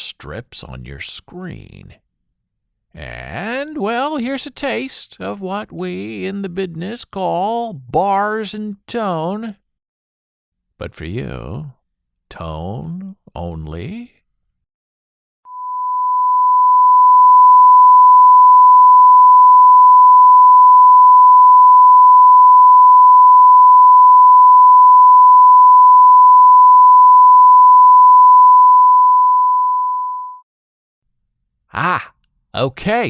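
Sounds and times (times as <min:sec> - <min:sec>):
steady sine test tone: 0:15.5 - 0:30.4.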